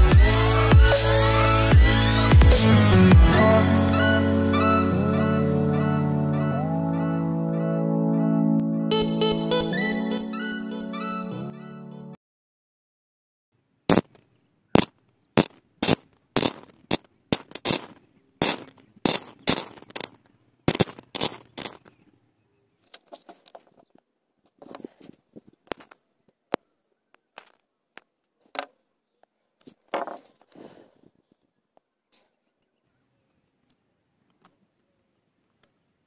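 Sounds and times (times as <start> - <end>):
electric arc snapping and crackling: 13.9 - 14.2, 14.8 - 21.9.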